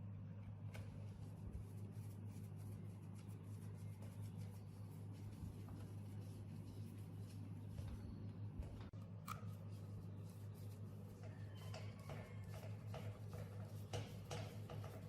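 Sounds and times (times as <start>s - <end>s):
steady low hum: 0.0s - 15.0s
faint small clicks and scratches: 8.8s - 15.0s.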